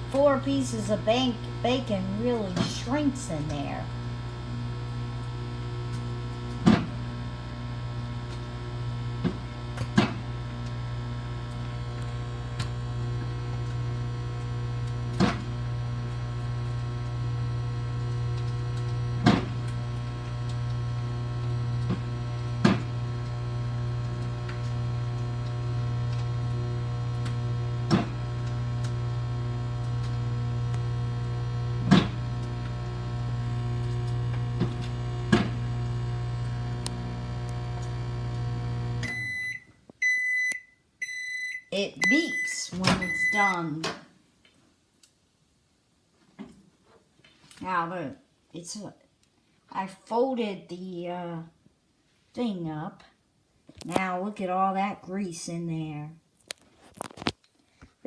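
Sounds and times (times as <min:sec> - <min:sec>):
microwave oven humming: 0:00.0 - 0:40.3.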